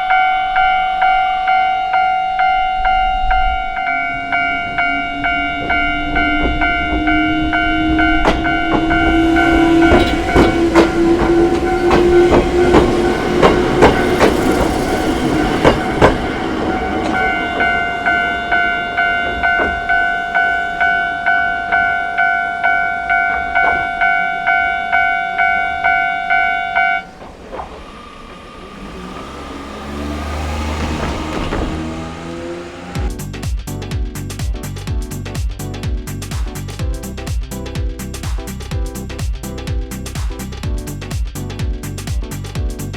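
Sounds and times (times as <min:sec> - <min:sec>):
level crossing bell clanging: 0:00.0 - 0:29.2
electric train whine: 0:00.0 - 0:33.2
train wheels clacking: 0:02.5 - 0:22.1.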